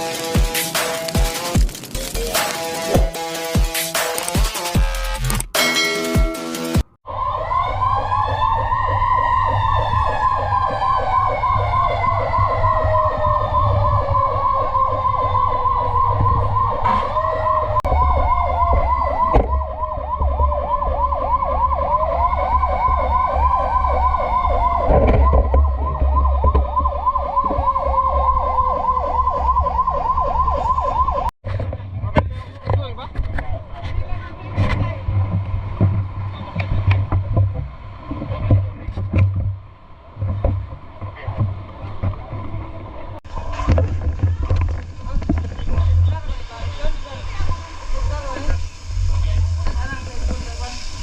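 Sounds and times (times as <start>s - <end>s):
siren slow wail: 7.0s - 31.3s
siren rapid yelp: 7.1s - 31.3s
fire truck engines rumbling: 7.2s - 24.9s.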